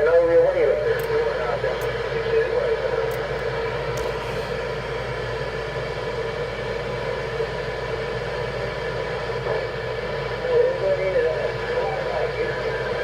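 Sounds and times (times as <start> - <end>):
radio static: 10.4 - 13.0.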